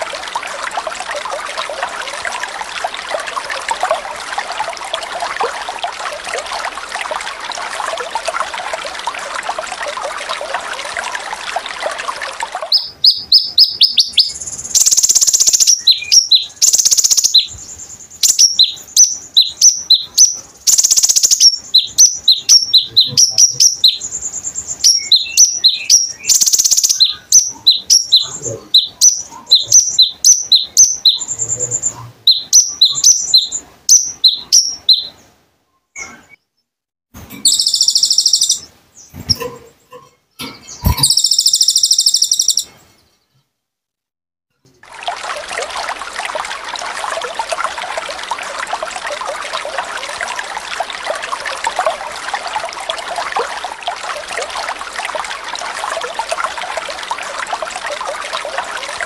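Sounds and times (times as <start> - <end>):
songbird chirping: 12.5 - 36.7, 37.4 - 43.5.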